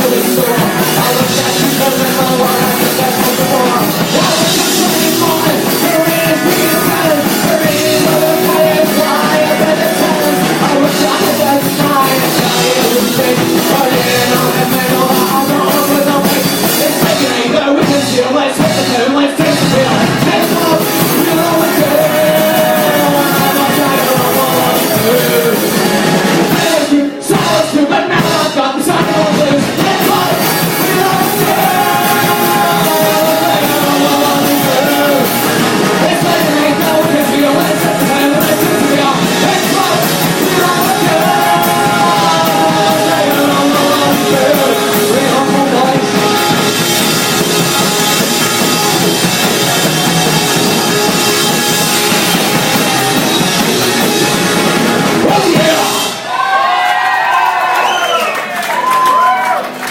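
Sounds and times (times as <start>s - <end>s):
rock music with sung vocals: 0.0s - 58.2s.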